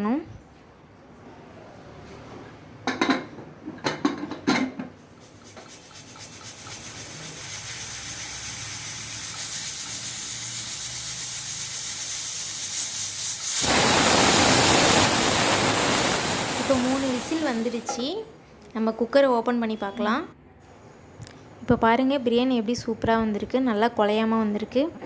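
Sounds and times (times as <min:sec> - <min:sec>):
steam hissing from pressure cooker: 0:05.3 - 0:18.0.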